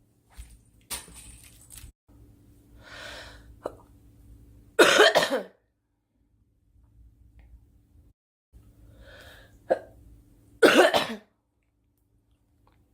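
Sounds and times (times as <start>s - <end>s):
girl coughing: 4.8s - 5.6s, 10.6s - 11.3s.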